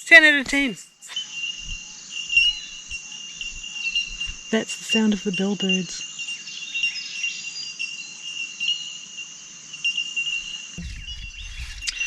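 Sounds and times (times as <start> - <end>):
bird bell-like pings: 1.1 - 8.9
low rumble: 10.8 - 12.0.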